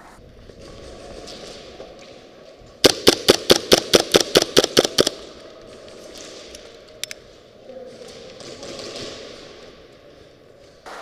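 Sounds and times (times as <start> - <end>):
airsoft gun firing: 2.8 - 5.3.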